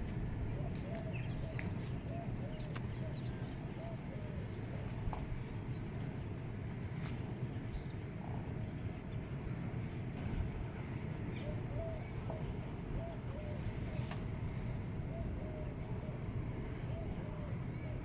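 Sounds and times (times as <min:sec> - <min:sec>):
wind rumble on microphone: 0:00.0 - 0:18.0
small birds calling: 0:00.6 - 0:04.6.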